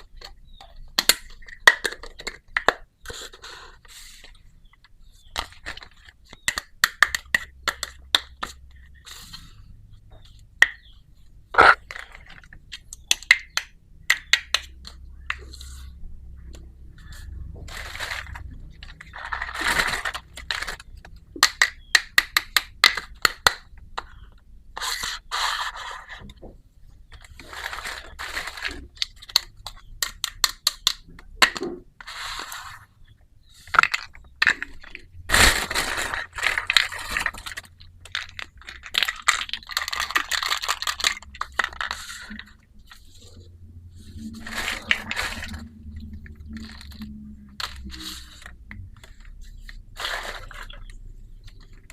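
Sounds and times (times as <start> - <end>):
plastic packaging crinkling: 17.0 - 21.2, 33.7 - 51.9.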